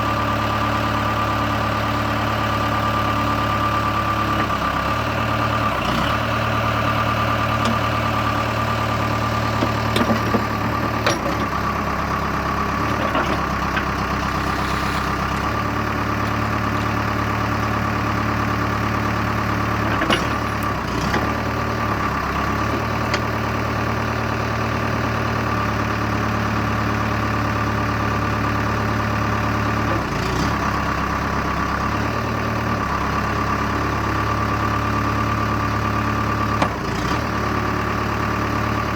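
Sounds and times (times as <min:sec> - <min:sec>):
diesel engine idling: 0:00.0 - 0:38.9
metallic knocks and clunks: 0:19.9 - 0:20.7.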